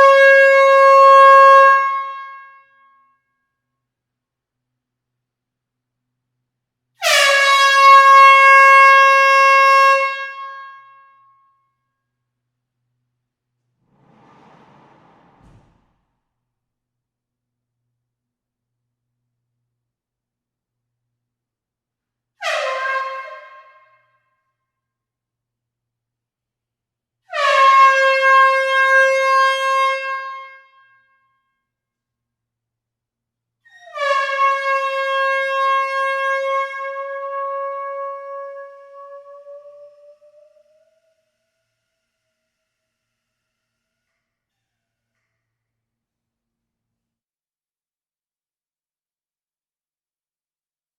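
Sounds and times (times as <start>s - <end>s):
air horn blast in a hall: 0.0s - 2.9s, 7.0s - 11.2s, 22.4s - 24.2s, 27.3s - 31.0s, 34.0s - 44.2s
air horn blast: 7.0s - 11.0s, 22.4s - 24.0s, 27.3s - 30.7s.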